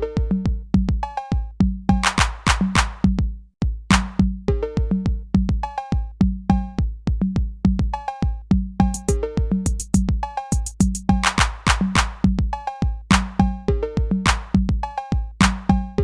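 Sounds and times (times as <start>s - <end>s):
electronic music with drum-machine beat: 1.0s - 3.1s, 8.8s - 16.0s.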